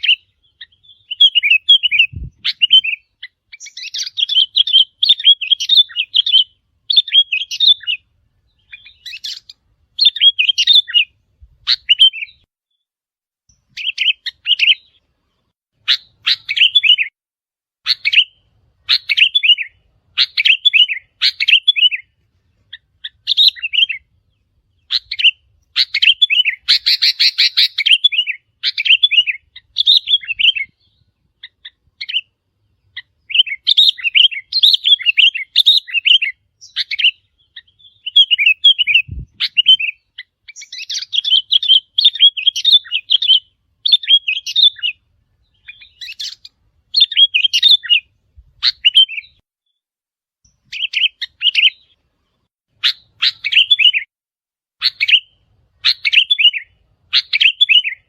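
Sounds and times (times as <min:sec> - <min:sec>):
bulbul chattering calls: 0:08.6 - 0:12.4, 0:24.8 - 0:30.8, 0:32.9 - 0:45.0, 0:45.6 - 0:49.3, 0:54.8 - 0:58.0.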